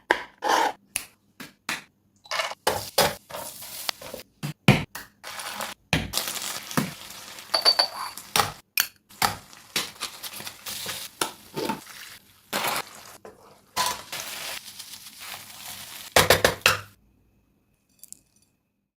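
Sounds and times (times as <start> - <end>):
chicken sizzling: 2.6 - 4.2, 5.2 - 16.9.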